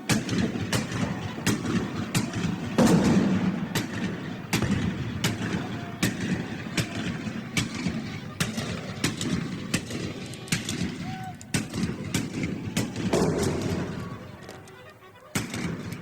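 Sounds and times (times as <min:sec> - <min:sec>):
gunshots cracking: 0:00.0 - 0:14.7, 0:15.3 - 0:16.0
heavy cannon boom: 0:00.2 - 0:07.8.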